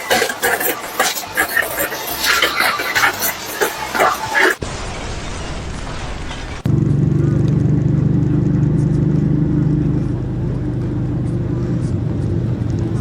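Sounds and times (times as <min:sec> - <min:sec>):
even rushing noise: 0:03.5 - 0:08.7
loud engine-like drone: 0:04.6 - 0:13.0.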